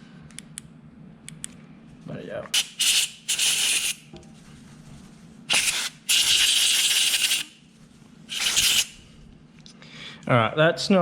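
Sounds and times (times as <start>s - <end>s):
compressed air blasts: 2.6s - 4.1s, 5.5s - 7.6s, 8.3s - 9.2s.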